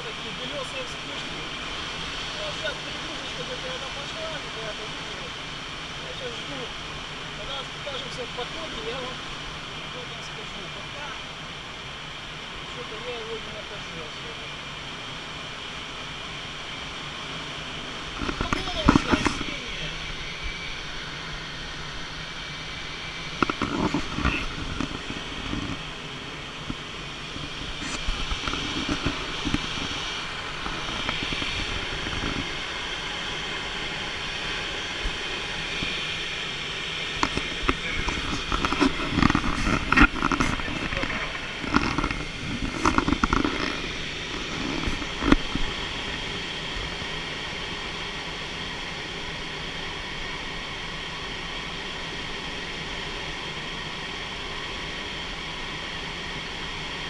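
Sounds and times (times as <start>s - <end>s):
voices: 0.0s - 11.3s, 18.2s - 20.0s, 37.2s - 43.8s
cockpit noise in flight: 0.0s - 57.0s.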